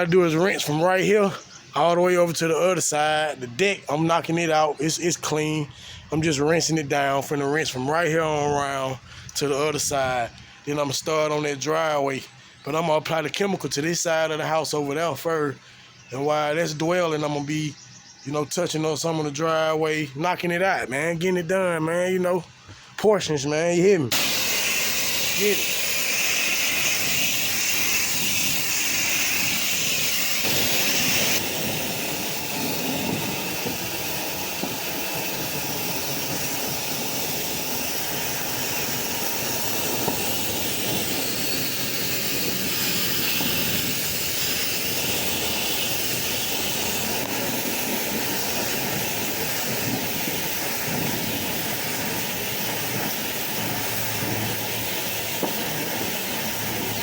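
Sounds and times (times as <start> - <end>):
pressure washer spraying water: 24.1 - 57.0.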